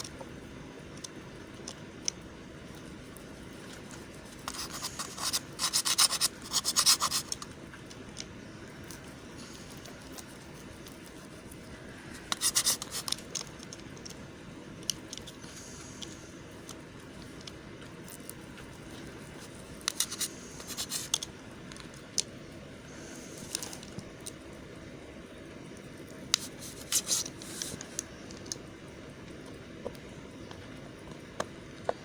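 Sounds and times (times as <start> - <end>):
faint steady hiss: 0.0 - 32.0
soap crackling scrapes: 2.8 - 7.5, 8.9 - 14.1, 18.0 - 21.3, 26.4 - 28.4.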